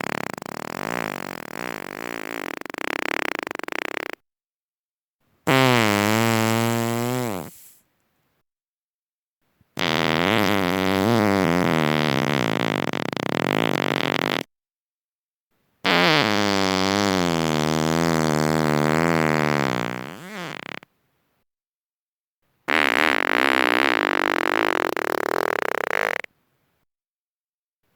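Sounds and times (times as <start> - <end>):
person farting: 0.0 - 4.2, 5.5 - 7.8, 9.8 - 14.5, 15.8 - 20.9, 22.7 - 26.3.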